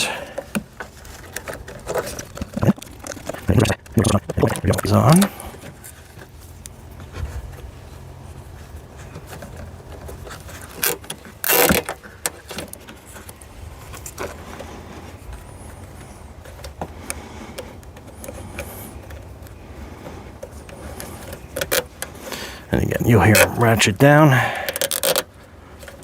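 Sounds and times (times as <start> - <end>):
zip tie ratcheting rasp: 10.7 - 12.0, 24.7 - 25.2.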